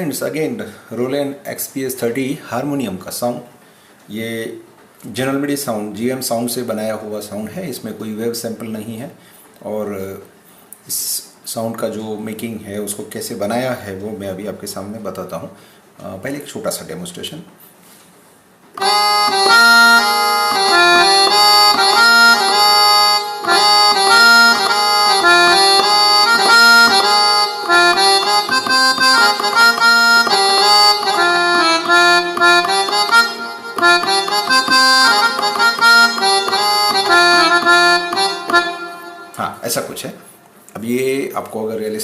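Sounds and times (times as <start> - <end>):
synthesizer accordion melody: 18.8 - 40.0.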